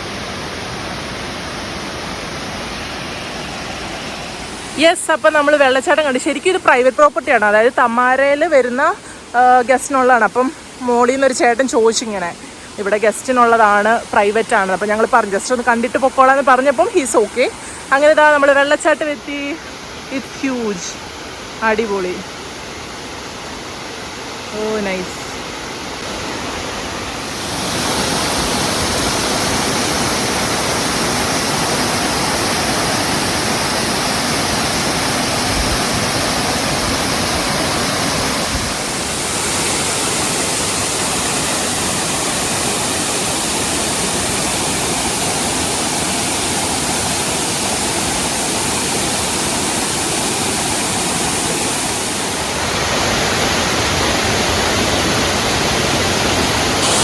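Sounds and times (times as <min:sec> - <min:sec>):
waterfall roaring: 0:00.0 - 0:07.5, 0:08.4 - 0:57.0.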